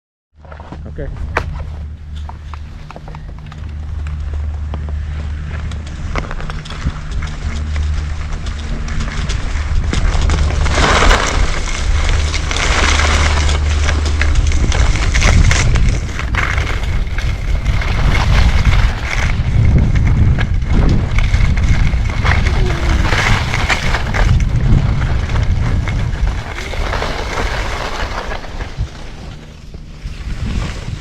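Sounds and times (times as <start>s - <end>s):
wind buffeting microphone: 0.8s - 31.0s
skis hissing over snow: 10.4s - 15.2s, 22.2s - 24.4s, 26.3s - 29.4s.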